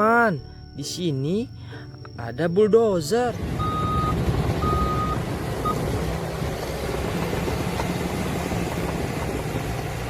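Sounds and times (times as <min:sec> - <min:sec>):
reversing beeper: 0:02.5 - 0:05.9.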